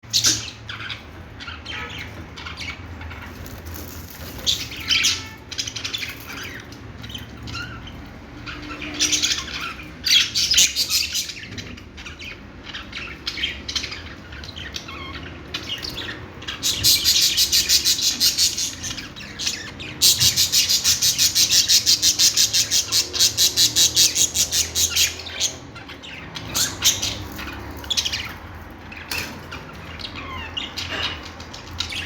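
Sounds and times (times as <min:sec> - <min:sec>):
budgerigars chirping: 0:00.1 - 0:32.0.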